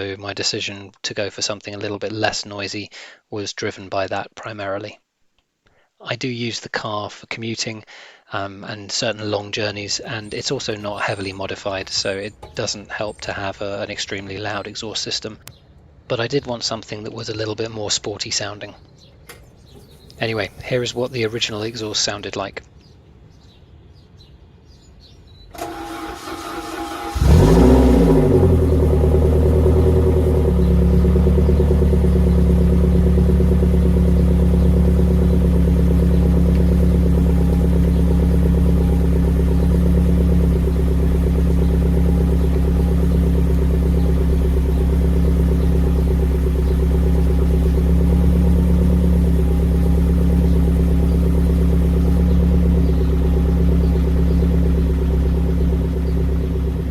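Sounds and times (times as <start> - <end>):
car engine starting and idling: 9.9 - 14.7, 19.2 - 22.3, 25.5 - 56.9.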